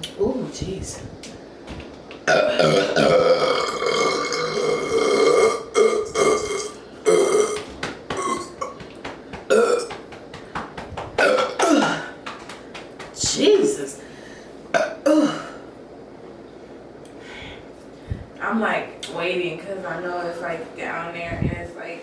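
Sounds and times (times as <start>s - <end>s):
woman burping loudly: 2.3s - 8.8s, 9.5s - 9.9s, 11.2s - 12.2s, 14.8s - 15.6s.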